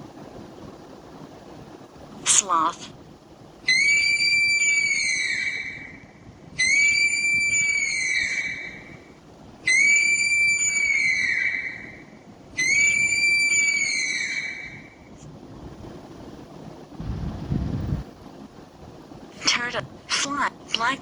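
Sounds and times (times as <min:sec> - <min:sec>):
sloth whistling cry: 0:03.7 - 0:15.0.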